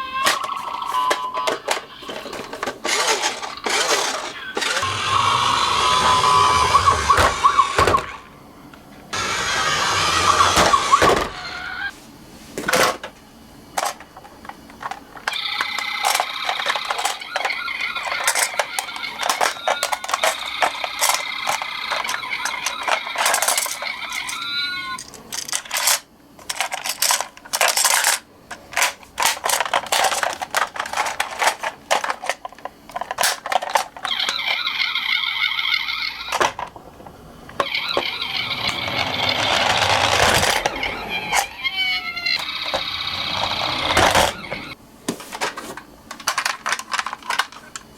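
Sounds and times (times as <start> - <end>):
toy cars clicking and clattering: 0.1 - 8.2, 13.8 - 36.8, 37.5 - 41.5, 42.3 - 44.8, 46.1 - 47.9
high whir of toy cars rolling: 0.2 - 8.3, 9.1 - 11.9, 28.8 - 44.8.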